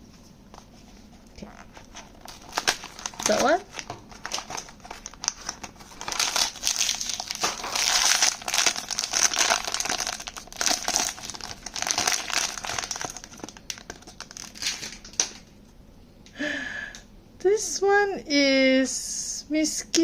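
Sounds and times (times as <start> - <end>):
packaging crinkling and rustling: 1.3 - 15.5.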